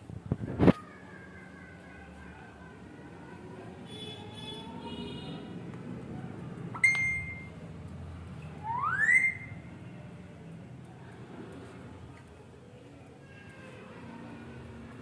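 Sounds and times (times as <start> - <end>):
parakeet whistling calls: 8.6 - 9.6.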